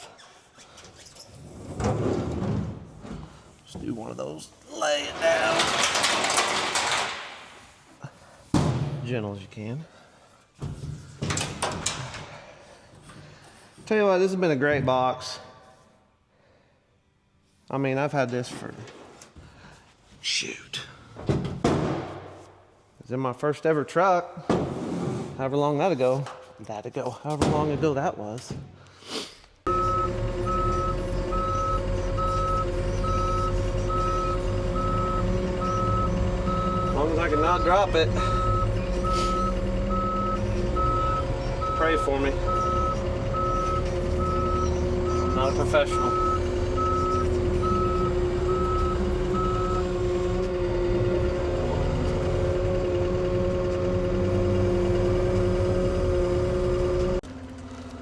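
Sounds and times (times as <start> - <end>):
backup alarm beeping: 29.7 - 50.1
skid steer engine running: 29.7 - 58.0.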